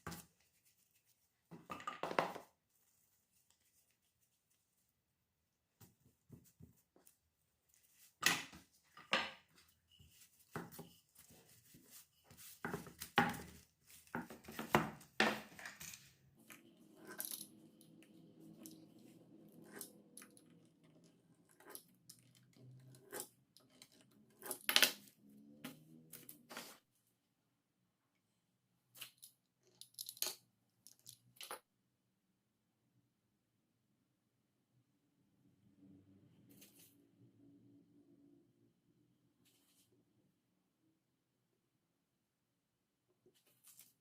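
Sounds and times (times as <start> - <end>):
kitchen scrapes and rustles: 7.8 - 17.6.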